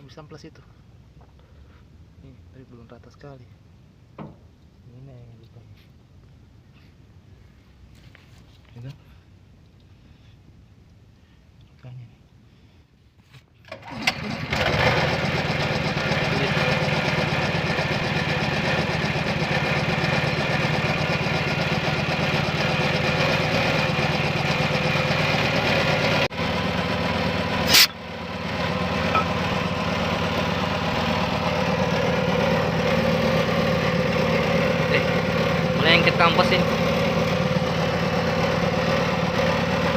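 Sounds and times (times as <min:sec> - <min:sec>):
engine idling: 0:13.7 - 0:39.9.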